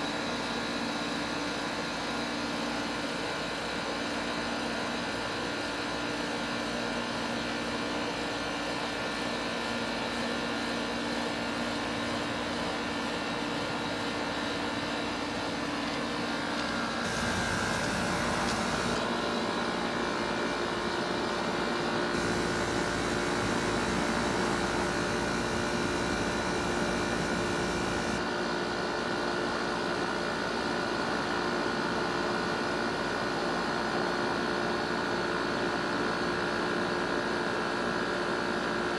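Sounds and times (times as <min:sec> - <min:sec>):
heat pump compressor hum: 0:15.8 - 0:28.3
high whine: 0:17.1 - 0:19.0, 0:22.2 - 0:28.2
rush of hiss: 0:17.1 - 0:19.0, 0:22.2 - 0:28.2.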